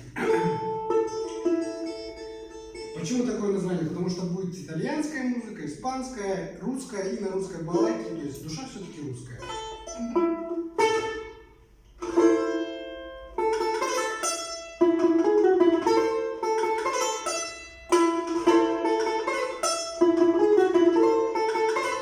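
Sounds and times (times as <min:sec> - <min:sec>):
balalaika plucked and strummed: 0:00.0 - 0:03.3, 0:09.4 - 0:22.0.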